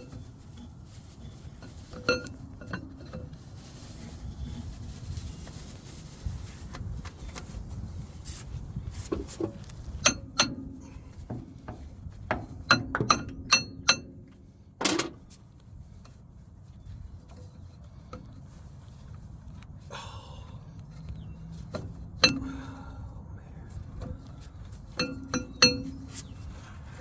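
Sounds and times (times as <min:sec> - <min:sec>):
metal tools striking metal: 0:25.0 - 0:26.0.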